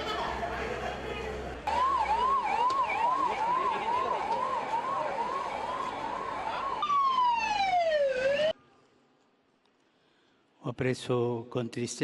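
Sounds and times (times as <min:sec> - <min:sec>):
emergency vehicle siren: 0:01.6 - 0:08.6.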